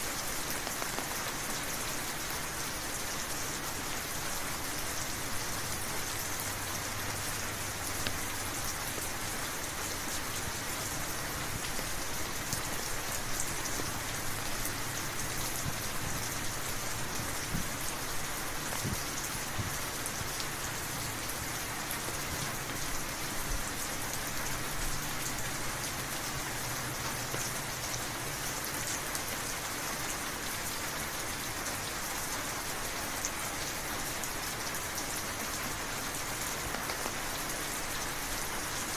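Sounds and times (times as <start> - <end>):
raindrops ticking: 0.0 - 29.3
rain on a hard surface: 0.0 - 38.9.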